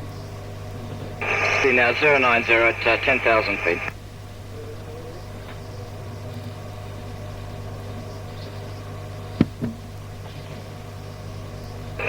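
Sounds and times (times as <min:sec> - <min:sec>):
radio static hiss: 0:00.8 - 0:04.0
low hum: 0:01.2 - 0:04.0.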